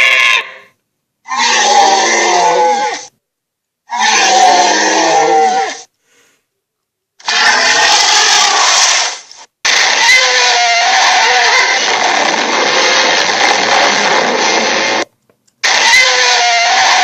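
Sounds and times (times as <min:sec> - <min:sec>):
cartoon monster roaring: 0:01.3 - 0:03.1, 0:03.9 - 0:05.8, 0:07.2 - 0:15.0, 0:15.6 - 0:17.0.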